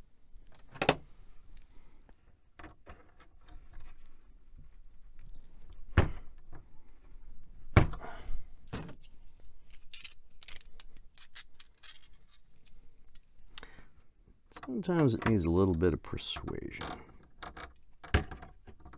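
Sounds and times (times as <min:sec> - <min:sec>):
computer parts clicking and clattering: 0:14.5 - 0:18.9.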